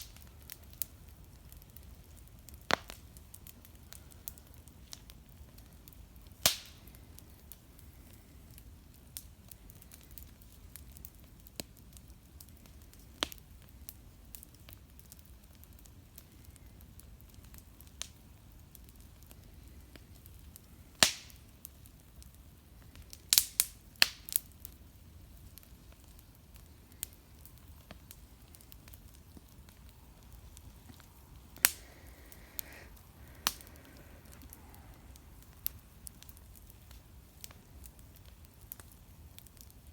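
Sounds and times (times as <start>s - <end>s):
low steady background noise: 0.0s - 39.9s.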